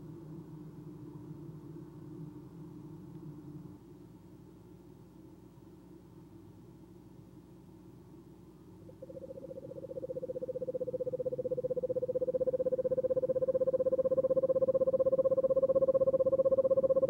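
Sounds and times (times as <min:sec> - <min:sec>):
owl monotone trill: 0:08.8 - 0:17.0.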